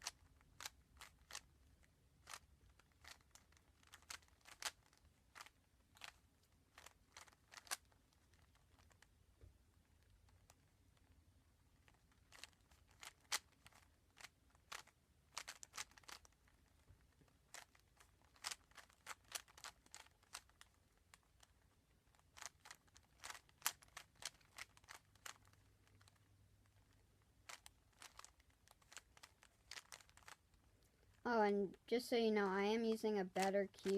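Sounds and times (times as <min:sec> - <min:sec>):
puzzle cube clicking: 0:00.0 - 0:01.6, 0:02.2 - 0:09.1, 0:11.8 - 0:16.8, 0:17.4 - 0:30.5.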